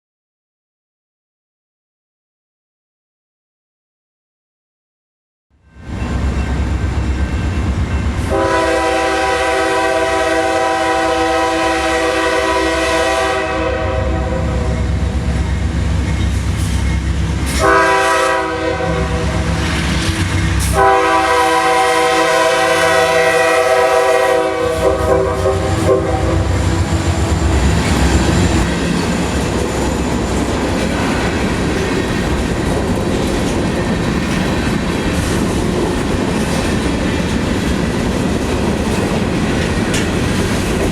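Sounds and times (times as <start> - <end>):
locomotive air horn blasts: 8.2 - 15.2, 17.5 - 19.5, 20.6 - 27.0.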